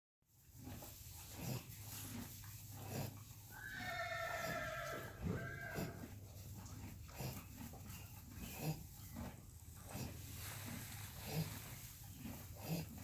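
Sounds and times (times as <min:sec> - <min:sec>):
animal snoring: 0:00.8 - 0:03.3, 0:06.7 - 0:13.0.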